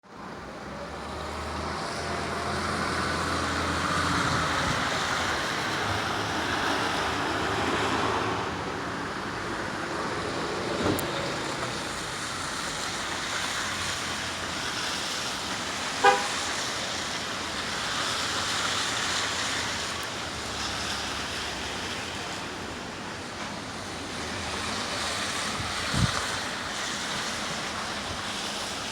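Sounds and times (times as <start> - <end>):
cars driving on street: 0.0 - 28.9
car horn honk: 16.0 - 16.4.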